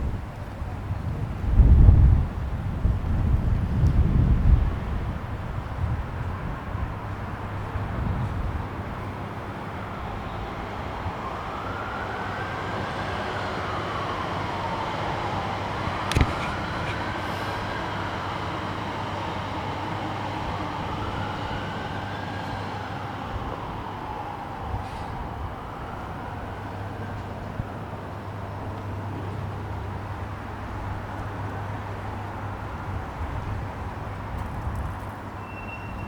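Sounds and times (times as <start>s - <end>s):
city street traffic: 0.0s - 36.0s
emergency vehicle siren wailing: 9.1s - 28.7s.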